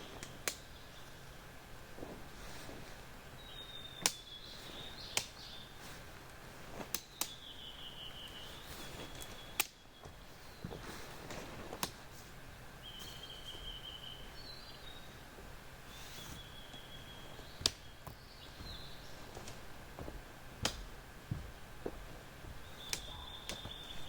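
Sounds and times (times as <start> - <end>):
sharp twig snaps: 0.2 - 0.7, 4.0 - 4.3, 5.1 - 5.5, 6.8 - 7.5, 9.2 - 9.8, 11.8 - 12.0, 17.6 - 18.2, 20.6 - 20.9, 22.8 - 23.7
high whistled bird calls: 3.4 - 5.8, 7.1 - 10.8, 12.8 - 15.2, 15.9 - 19.4, 22.6 - 24.0.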